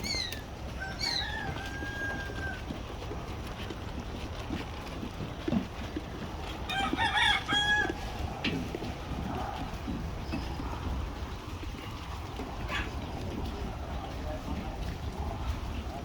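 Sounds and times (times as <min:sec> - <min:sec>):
low farmyard background noise: 0:00.0 - 0:16.0
rooster crowing: 0:00.7 - 0:02.8, 0:06.7 - 0:08.1.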